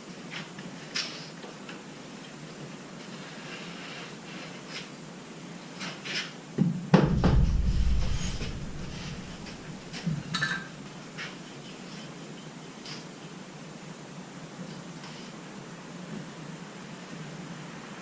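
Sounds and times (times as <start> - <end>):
heavy thud with low rumble: 7.0 - 10.0.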